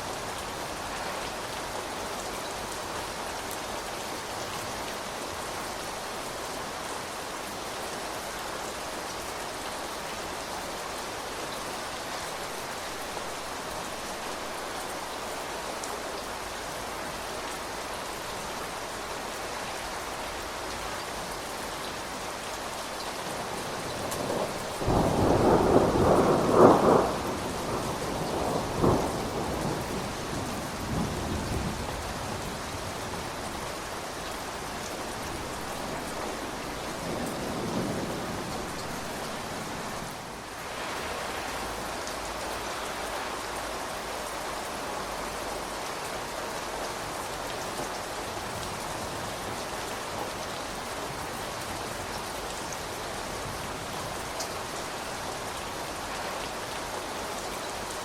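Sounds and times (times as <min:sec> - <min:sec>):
rain falling: 0:00.0 - 0:58.0
thunder rumbling: 0:23.9 - 0:32.9.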